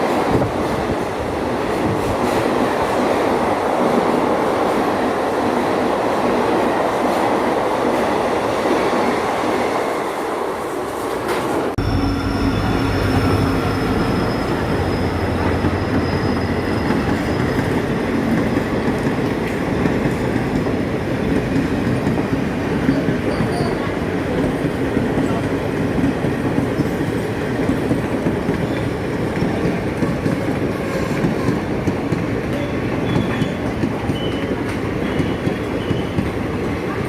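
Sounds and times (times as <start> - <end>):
train wheels rumbling on track: 0.0 - 37.0
high squeal from train wheels: 11.0 - 19.6, 22.7 - 24.1, 28.3 - 31.8, 32.4 - 37.0.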